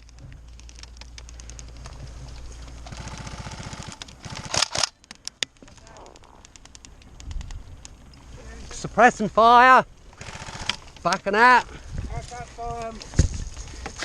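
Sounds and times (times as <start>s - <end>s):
gearbox clicking: 0.0s - 8.3s
airsoft guns firing full-auto: 2.8s - 5.0s, 10.2s - 11.0s.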